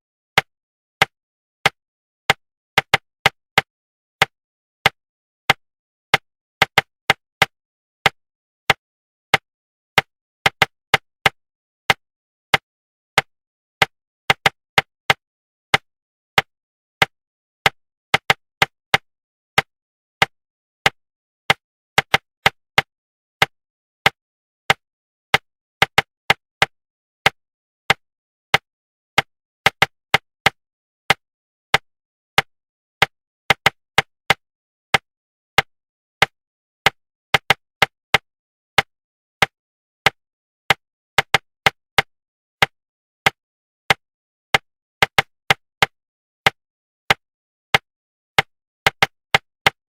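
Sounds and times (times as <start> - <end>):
sharp knocks tapped in rhythm: 0.4 - 19.0, 32.4 - 44.0, 44.6 - 49.8.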